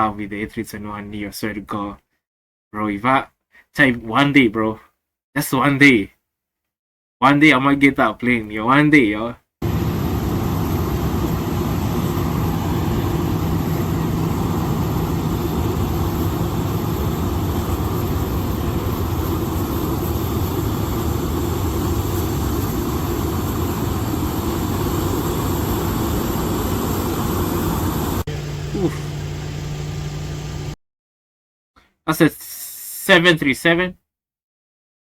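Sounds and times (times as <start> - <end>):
jet engines roaring: 9.6 - 30.8.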